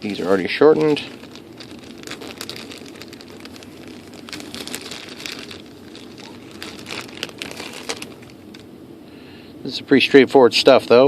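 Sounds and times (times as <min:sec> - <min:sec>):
plastic packaging crinkling: 0:00.0 - 0:08.7.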